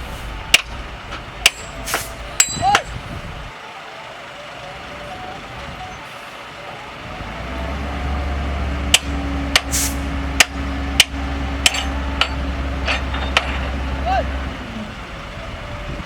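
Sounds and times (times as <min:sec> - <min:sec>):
diesel engine running: 0:00.0 - 0:16.0
sharp metallic clanks: 0:00.5 - 0:03.0, 0:08.9 - 0:13.7
short hiss: 0:09.7 - 0:10.0.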